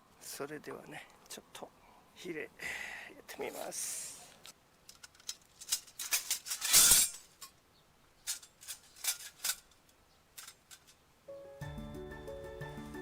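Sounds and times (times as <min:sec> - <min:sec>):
metal clicks and clatter: 0:04.8 - 0:07.6, 0:08.2 - 0:11.0
background music: 0:11.3 - 0:13.0.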